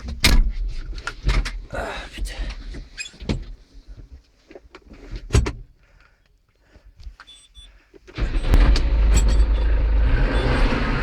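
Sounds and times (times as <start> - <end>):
vehicle engine starting and running: 8.2 - 11.0.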